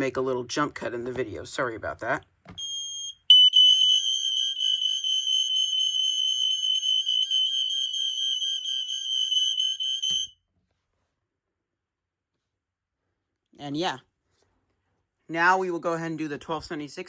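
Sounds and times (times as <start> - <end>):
smoke alarm tone: 2.6 - 10.4.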